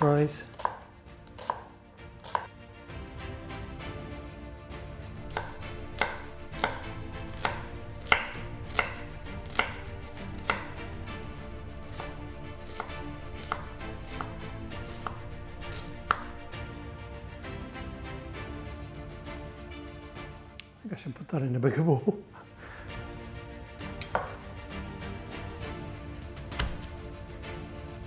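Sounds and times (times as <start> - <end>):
knife chopping on a board: 0.0 - 2.5, 5.2 - 16.6, 24.0 - 24.4, 26.5 - 27.0.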